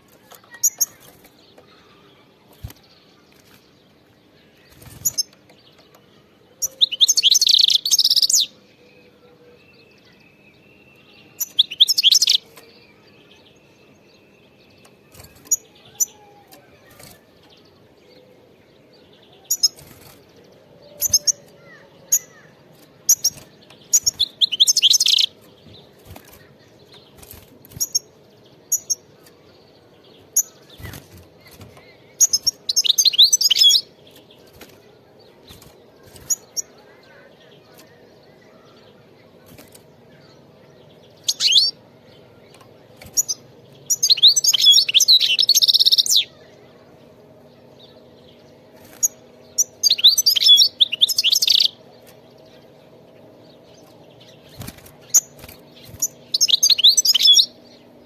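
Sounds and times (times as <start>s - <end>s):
goldfinch twittering: 53.5s - 57.8s.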